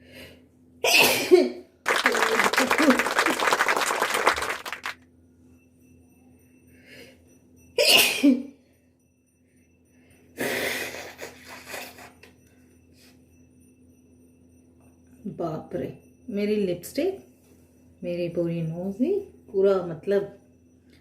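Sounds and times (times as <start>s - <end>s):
woman coughing: 0.8s - 1.6s, 7.8s - 8.5s
woman sneezing: 7.8s - 8.4s.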